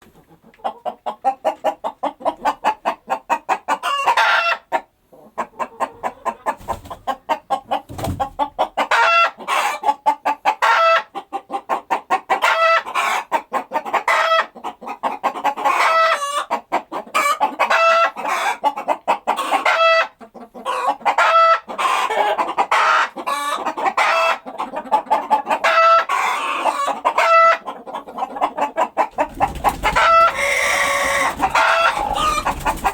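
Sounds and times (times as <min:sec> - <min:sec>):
chickens clucking: 0:00.0 - 0:32.9
rooster crowing: 0:30.0 - 0:32.5.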